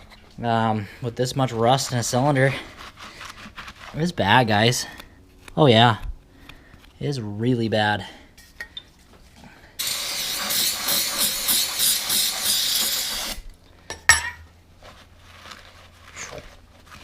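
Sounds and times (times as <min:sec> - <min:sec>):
spray hissing: 0:09.8 - 0:13.4.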